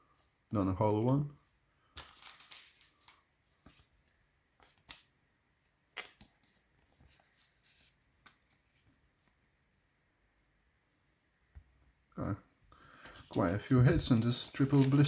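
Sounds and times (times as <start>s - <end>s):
trading cards rustling and clicking: 1.9s - 4.0s, 4.6s - 5.1s, 5.9s - 9.4s, 12.9s - 15.0s.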